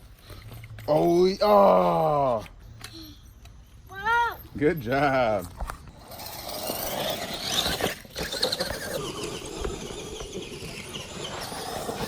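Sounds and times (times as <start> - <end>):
tyres churning over ground: 4.0 - 12.0
toy truck motor whining: 5.6 - 12.0.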